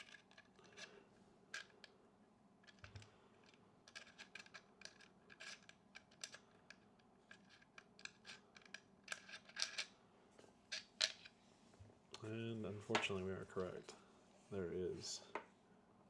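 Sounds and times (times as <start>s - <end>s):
small plastic clicks: 2.6s - 9.9s.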